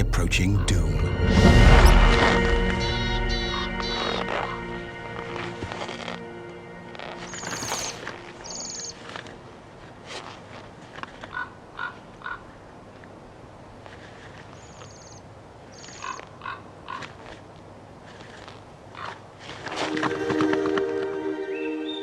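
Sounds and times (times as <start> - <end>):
music: 0.0 - 8.9, 19.9 - 22.0.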